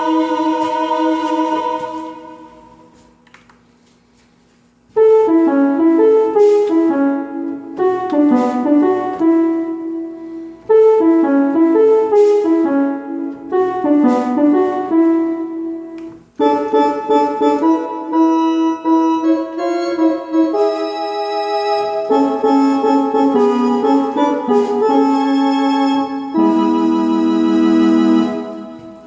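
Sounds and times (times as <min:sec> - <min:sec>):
keyboard playing piano-like melody: 0:00.0 - 0:02.9, 0:04.9 - 0:29.0
bright held keyboard notes: 0:00.0 - 0:29.0.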